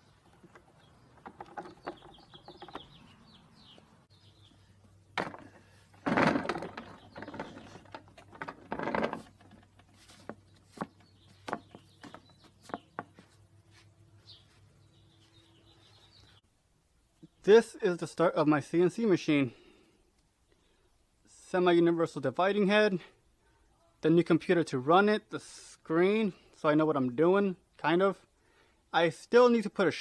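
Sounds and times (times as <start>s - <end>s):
objects knocking and clattering: 0.2s - 3.0s, 5.1s - 10.4s
rustling scrapes: 5.3s - 15.3s.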